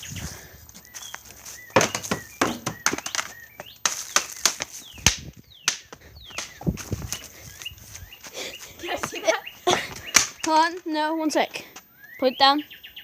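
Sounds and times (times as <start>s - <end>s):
small bird chirping: 0.0s - 13.0s
sharp knocks and clacks: 1.8s - 6.6s.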